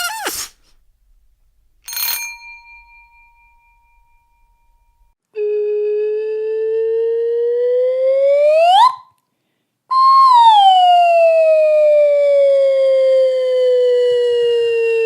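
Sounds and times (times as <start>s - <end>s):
whistle-like pitched tone: 5.4s - 9.1s, 9.9s - 11.9s.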